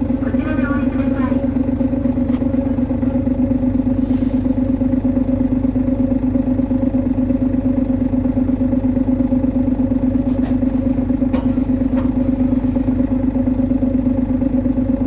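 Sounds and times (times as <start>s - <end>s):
bus engine droning: 0.0s - 15.0s.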